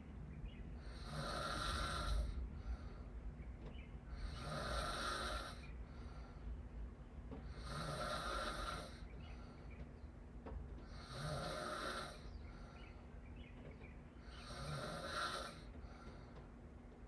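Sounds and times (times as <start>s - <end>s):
quiet breathing: 0.7s - 10.1s, 10.8s - 13.5s, 14.1s - 17.0s
person snoring: 0.9s - 2.4s, 4.2s - 5.7s, 7.5s - 9.0s, 10.9s - 12.2s, 14.4s - 15.7s.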